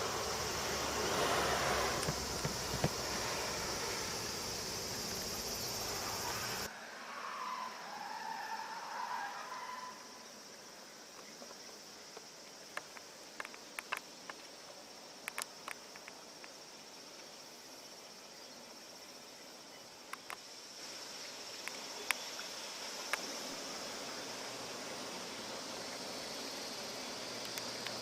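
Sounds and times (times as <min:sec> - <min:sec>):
broad hiss: 0:00.0 - 0:06.7, 0:10.4 - 0:28.0
high-pitched insect buzz: 0:00.0 - 0:06.7.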